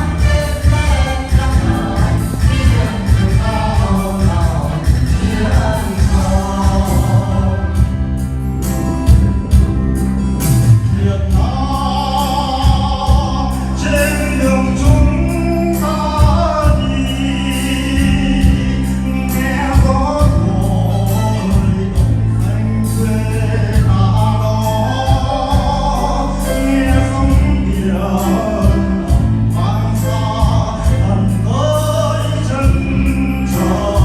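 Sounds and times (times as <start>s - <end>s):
choir singing: 0.0s - 7.9s
instrumental accompaniment with beat: 0.0s - 34.0s.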